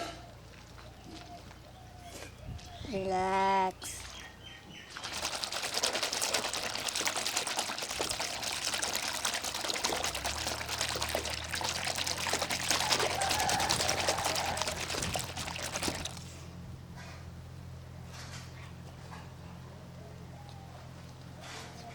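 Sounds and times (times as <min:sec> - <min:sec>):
water pouring and splashing: 0:04.9 - 0:16.4.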